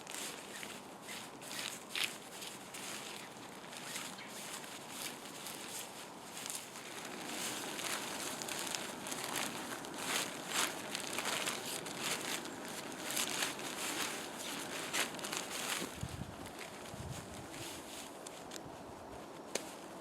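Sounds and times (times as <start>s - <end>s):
tent fabric rustling and crinkling: 0.0s - 20.0s.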